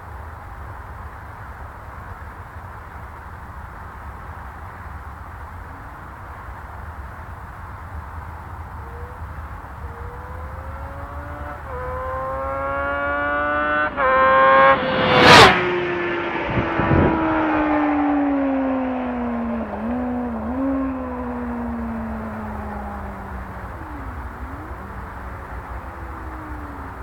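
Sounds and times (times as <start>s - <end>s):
motorcycle accelerating past: 8.6s - 27.0s.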